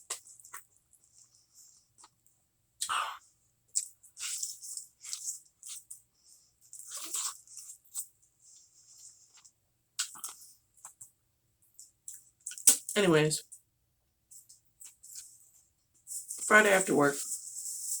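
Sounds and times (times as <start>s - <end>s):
crunching fried chicken: 3.7s - 11.0s.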